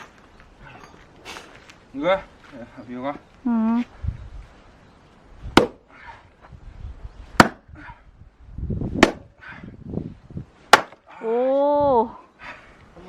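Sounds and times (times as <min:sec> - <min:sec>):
axe striking wood: 0:05.6 - 0:05.8, 0:07.4 - 0:07.6, 0:09.0 - 0:09.2, 0:10.7 - 0:11.0.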